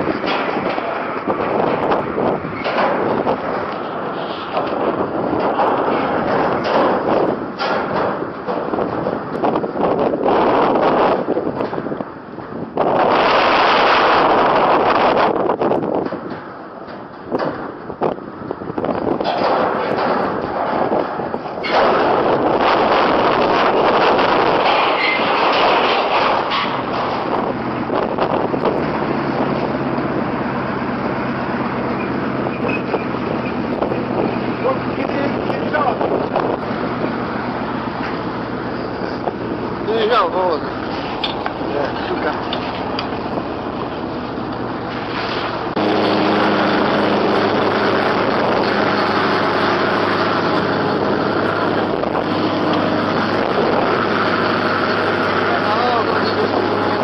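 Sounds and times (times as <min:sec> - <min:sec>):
steady low hum: 0:00.0 - 0:57.0
wind buffeting microphone: 0:00.0 - 0:57.0
vehicle engine running: 0:19.6 - 0:57.0.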